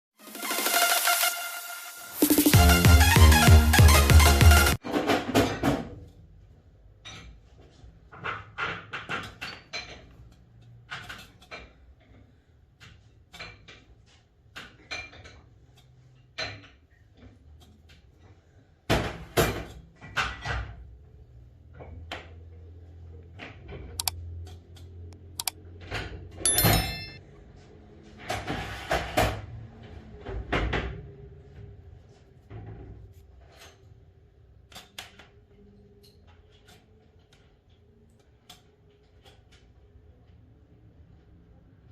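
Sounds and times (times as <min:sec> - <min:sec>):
tools and metal parts clinking: 0:26.5 - 0:27.2.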